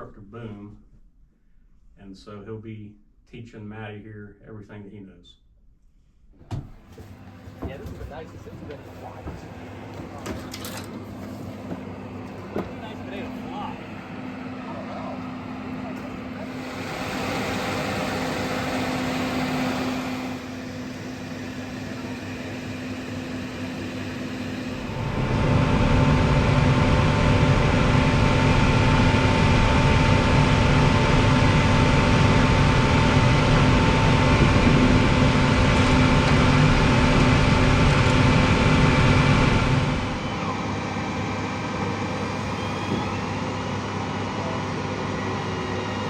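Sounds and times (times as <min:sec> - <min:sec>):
mechanical drone: 0:14.7 - 0:46.0.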